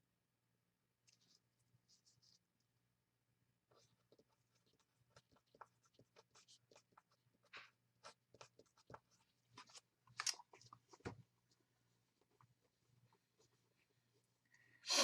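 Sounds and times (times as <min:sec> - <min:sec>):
pen writing scratches: 0:03.7 - 0:09.8.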